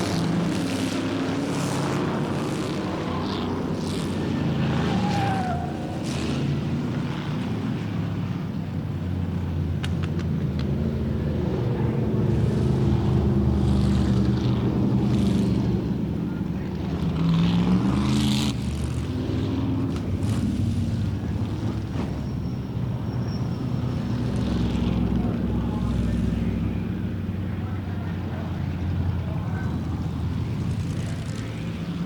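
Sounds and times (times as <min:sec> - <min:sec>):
stock car engines racing: 0:00.0 - 0:32.0.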